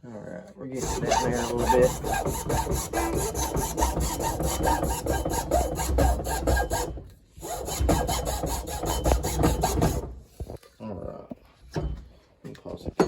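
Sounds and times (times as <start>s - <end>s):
hand saw cutting wood: 0.8s - 10.5s.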